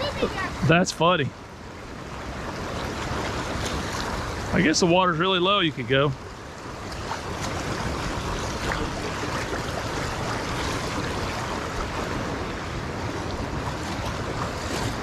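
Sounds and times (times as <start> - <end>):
river rushing over rocks: 0.0 - 15.0.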